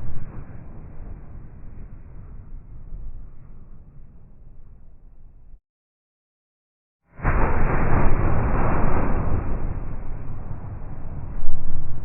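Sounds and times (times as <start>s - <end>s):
deep explosion rumble: 7.1s - 12.0s.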